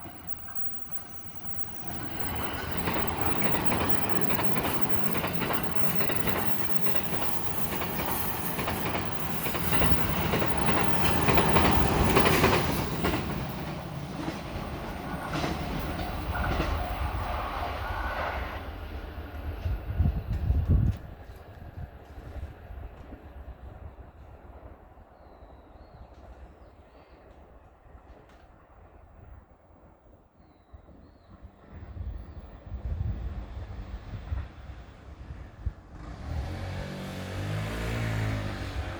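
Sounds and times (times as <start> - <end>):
crossing warning bell: 0.0 - 17.2
train wheels rushing on rails: 0.0 - 30.1, 30.8 - 38.9
clickety-clack over rail joints: 0.0 - 38.9.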